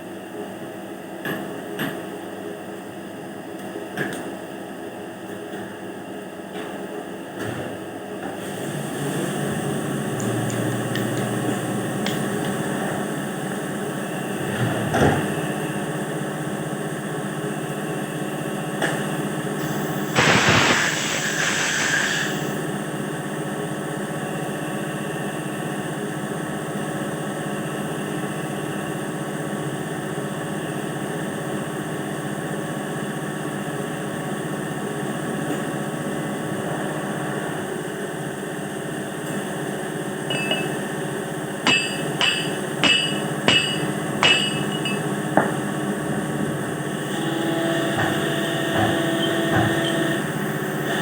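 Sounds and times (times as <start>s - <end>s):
hammer strikes on metal: 40.3s - 40.8s, 41.7s - 45.6s.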